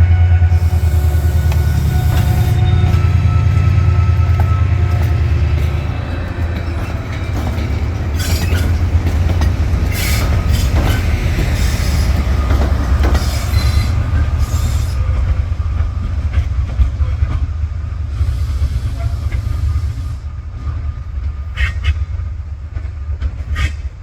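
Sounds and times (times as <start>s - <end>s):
train wheels squealing: 0.0s - 15.2s
train rumbling past: 0.0s - 24.0s
wheels clicking over rail joints: 1.4s - 17.4s.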